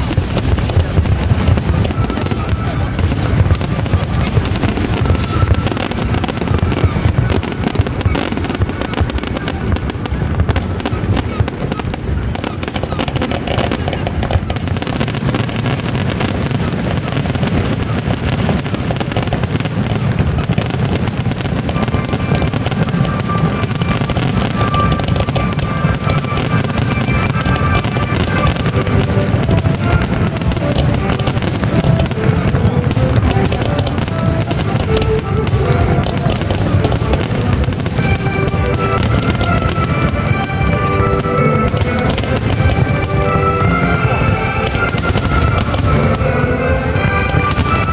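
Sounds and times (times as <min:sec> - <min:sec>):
fireworks bangs and crackles: 0:00.0 - 0:47.9
music playing: 0:21.8 - 0:47.9.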